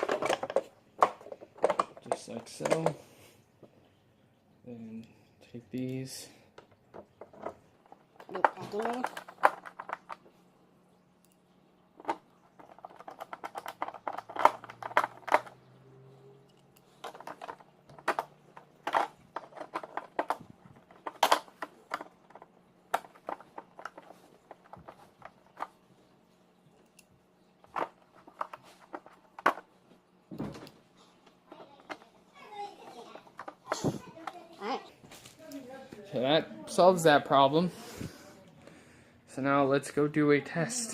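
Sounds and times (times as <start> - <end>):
plastic clicks and knocks: 0.0 - 3.0, 6.6 - 10.3, 12.0 - 15.8, 17.0 - 25.8, 27.6 - 29.7, 32.8 - 34.4
faint steady hum: 0.0 - 40.9.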